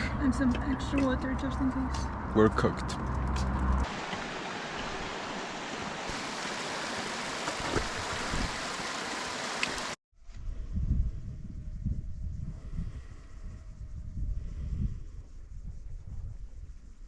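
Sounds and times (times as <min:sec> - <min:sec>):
running water rushing: 0:03.8 - 0:10.0
wind buffeting microphone: 0:07.6 - 0:08.8, 0:10.3 - 0:17.0.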